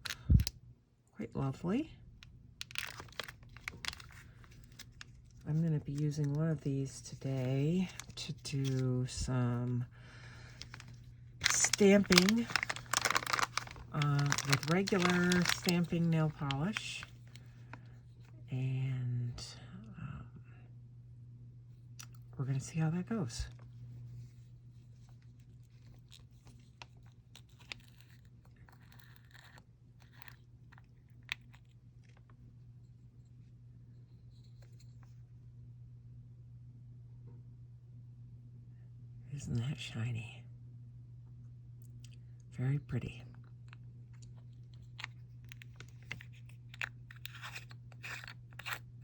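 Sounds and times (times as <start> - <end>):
steady low hum: 0.0 - 49.0
plastic jars clicking and crinkling: 2.6 - 5.4, 7.1 - 8.8, 10.5 - 17.3, 44.2 - 48.8
scraping rustles: 10.5 - 17.4.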